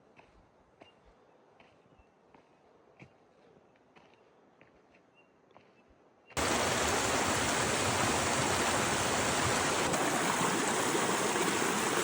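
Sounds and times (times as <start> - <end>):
creek water flowing: 6.4 - 12.0.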